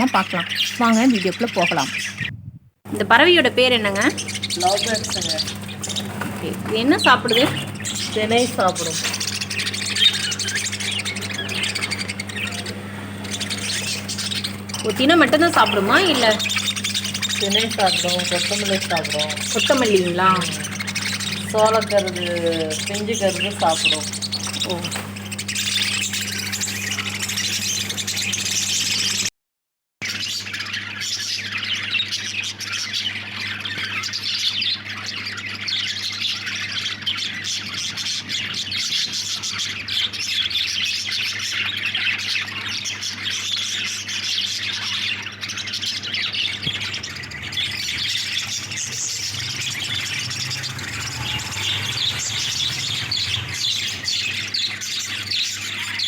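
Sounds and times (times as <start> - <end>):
lovebirds chattering and squawking: 0.0 - 29.3, 30.0 - 56.0
steady low hum: 1.8 - 29.3.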